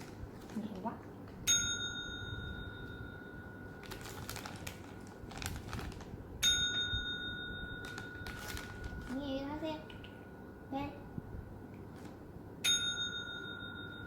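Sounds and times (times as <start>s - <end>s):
service bell ding: 1.5s - 3.7s, 6.4s - 7.8s, 12.6s - 14.0s.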